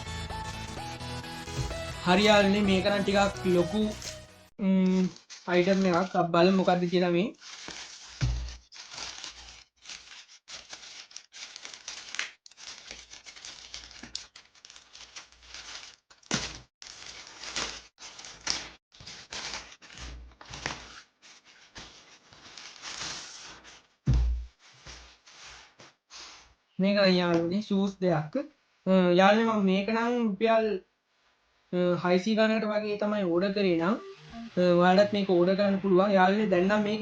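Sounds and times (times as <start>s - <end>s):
packaging being torn and crinkled: 7.4s - 23.5s.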